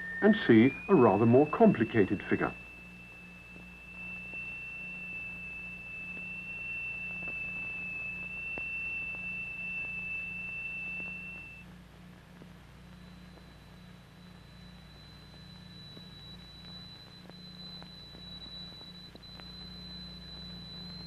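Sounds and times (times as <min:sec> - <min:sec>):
high-pitched steel plate tone: 0:00.0 - 0:11.5
fainter higher tone: 0:00.0 - 0:11.7, 0:12.9 - 0:21.0
low hum: 0:00.0 - 0:21.0.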